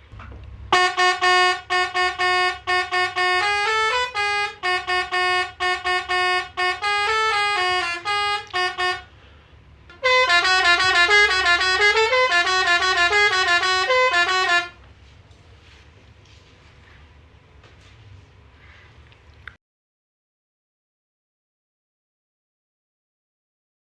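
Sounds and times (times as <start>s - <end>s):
musical air horn tune: 0.7s - 14.9s.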